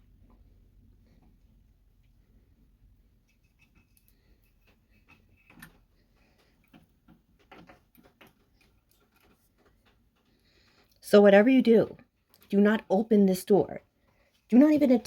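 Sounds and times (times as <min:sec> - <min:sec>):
faint clicks and light taps: 0:03.1 - 0:11.0.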